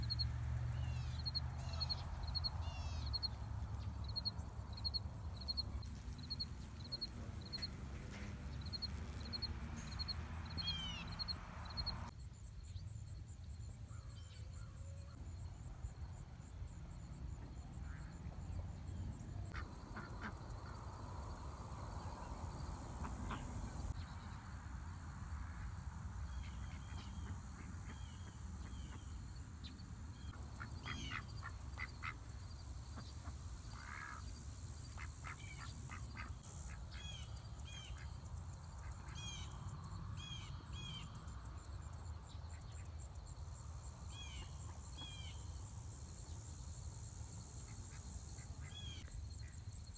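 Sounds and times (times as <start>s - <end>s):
birds calling: 6.0s - 12.1s, 26.3s - 39.6s.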